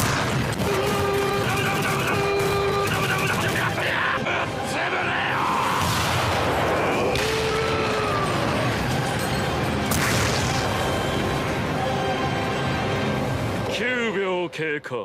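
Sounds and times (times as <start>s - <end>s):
background music: 0.0s - 15.0s
sharp crash: 9.9s - 10.9s.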